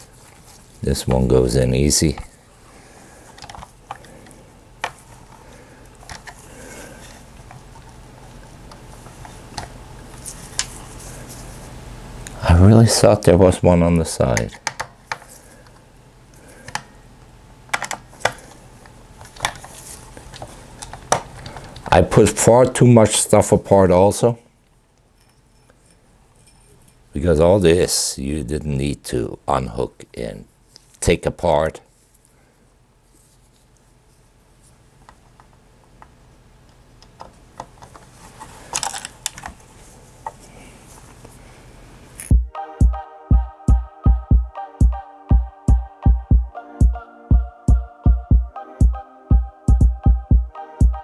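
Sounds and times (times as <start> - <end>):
plastic parts clicking and tapping: 6.0 - 6.4, 14.4 - 15.8, 17.7 - 18.5, 19.2 - 21.9, 37.0 - 38.1, 38.7 - 39.6
small plastic parts clicking: 17.7 - 18.4, 38.7 - 39.6.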